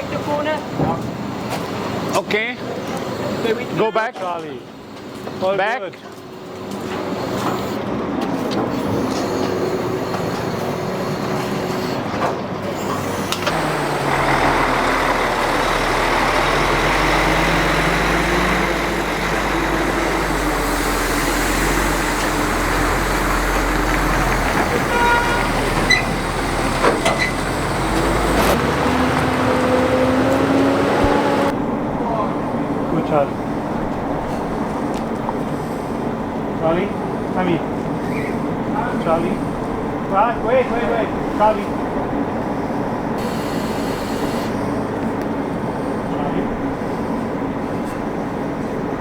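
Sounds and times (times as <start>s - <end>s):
heavy truck engine running: 6.0s - 40.1s, 40.8s - 49.0s.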